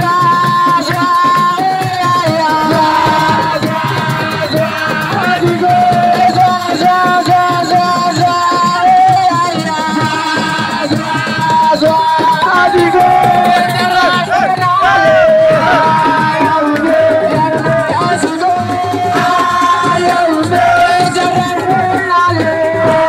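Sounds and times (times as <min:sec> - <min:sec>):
hand drum and percussion rhythm: 0:00.0 - 0:23.0
person singing long notes: 0:00.0 - 0:23.0.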